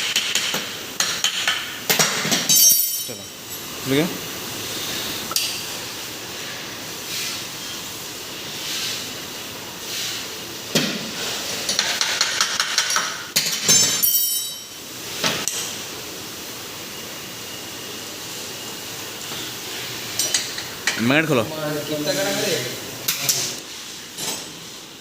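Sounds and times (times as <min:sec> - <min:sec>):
metal tools clinking and knocking: 0:02.5 - 0:03.2, 0:13.7 - 0:14.7
metallic clank with ring: 0:02.5 - 0:03.3, 0:13.7 - 0:14.8.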